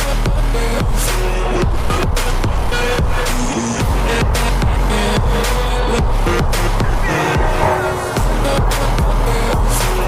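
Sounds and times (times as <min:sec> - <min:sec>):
instrumental pop music with beat: 0:00.0 - 0:10.0.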